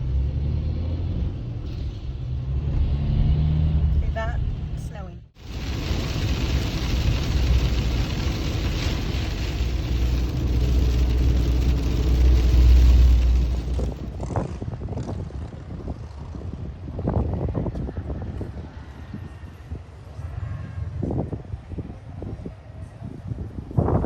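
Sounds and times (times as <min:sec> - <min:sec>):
car road noise drone: 0:00.0 - 0:15.0
tyre hiss on wet road: 0:05.4 - 0:14.3.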